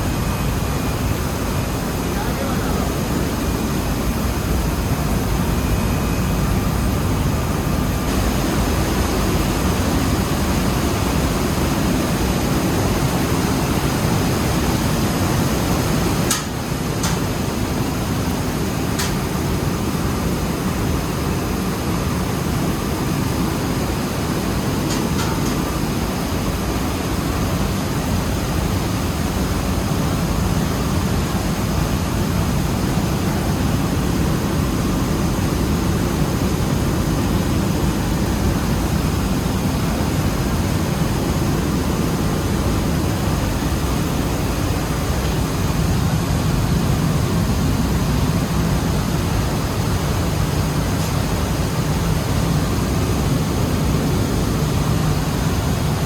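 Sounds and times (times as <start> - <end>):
mill machinery roaring: 8.1 - 17.4.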